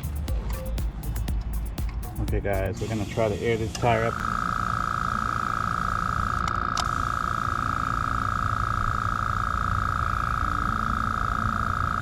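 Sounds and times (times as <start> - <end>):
air compressor humming: 0.0 - 12.0.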